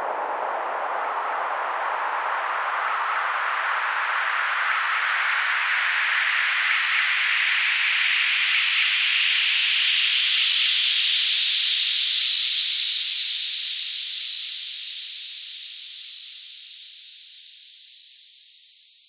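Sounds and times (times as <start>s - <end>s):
rising wind sweep hiss: 9.8s - 19.0s.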